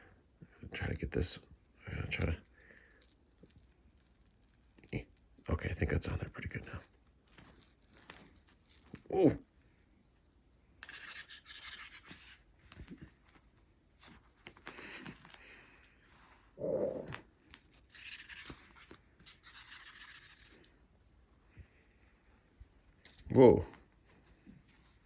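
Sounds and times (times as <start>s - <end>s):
cat toy rustling and scratching: 3.3s - 15.4s, 17.2s - 25.0s.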